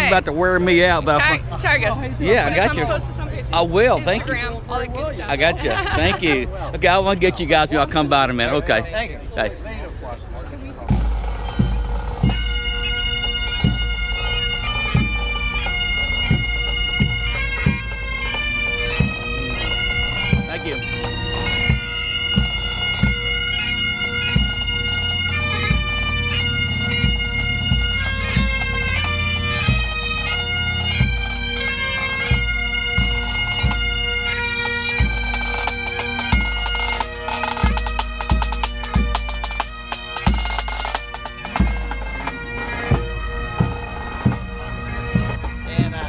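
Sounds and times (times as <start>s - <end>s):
bagpipes playing melody: 0.0s - 8.8s, 10.9s - 46.0s
drum beats: 10.9s - 46.0s.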